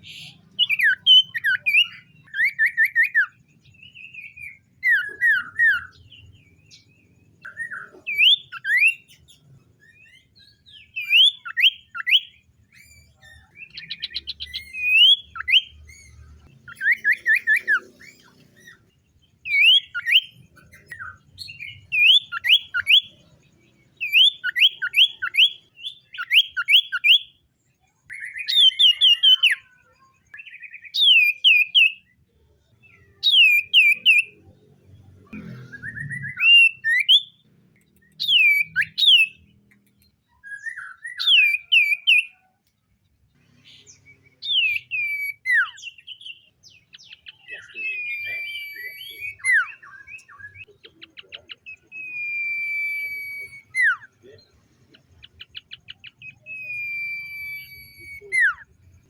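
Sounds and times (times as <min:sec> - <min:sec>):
rapid bird trill: 0:35.3 - 0:39.5.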